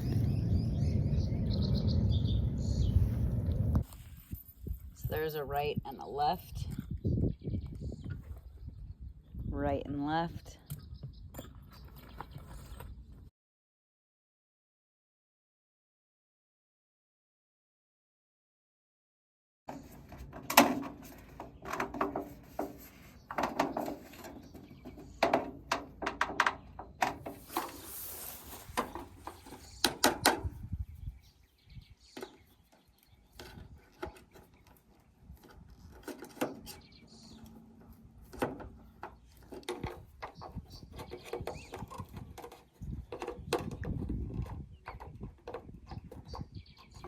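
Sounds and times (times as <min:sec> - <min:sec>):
gutter parts knocking and clattering: 0:19.7 - 0:27.8, 0:28.7 - 0:30.7, 0:32.1 - 0:47.0
short hiss: 0:27.4 - 0:28.9.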